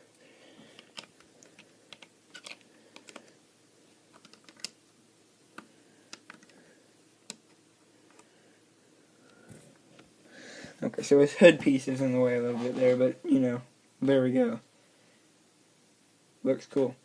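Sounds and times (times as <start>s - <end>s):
plastic pieces clicking together: 0.8s - 3.3s, 4.1s - 4.8s.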